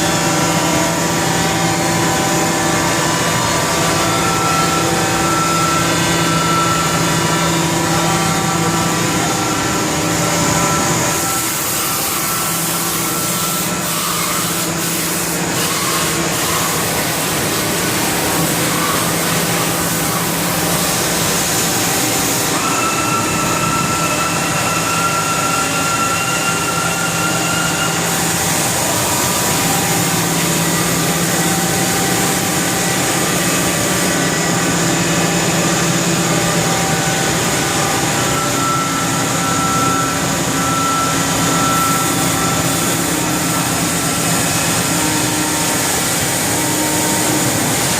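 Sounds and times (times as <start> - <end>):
higher whine: 0.0 - 47.9
machine whine tones: 0.0 - 47.9.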